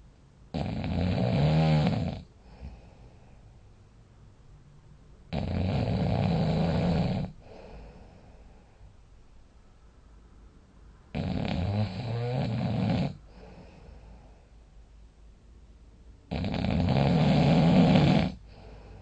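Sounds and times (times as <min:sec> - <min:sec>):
person snoring loudly: 0:00.5 - 0:02.8, 0:05.3 - 0:07.8, 0:11.1 - 0:13.6, 0:16.3 - 0:18.4.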